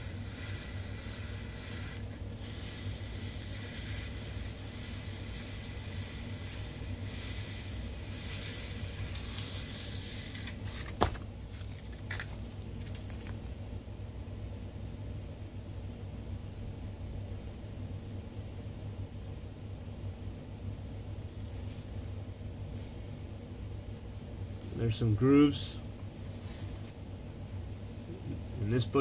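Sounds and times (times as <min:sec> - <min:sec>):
sandpaper rubbing on metal: 0:00.0 - 0:10.7.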